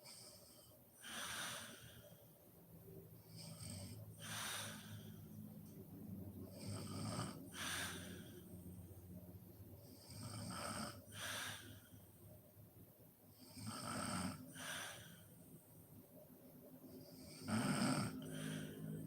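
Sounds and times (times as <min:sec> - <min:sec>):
woman snoring: 0:06.5 - 0:08.4, 0:10.0 - 0:11.8, 0:13.4 - 0:15.1, 0:17.2 - 0:19.0.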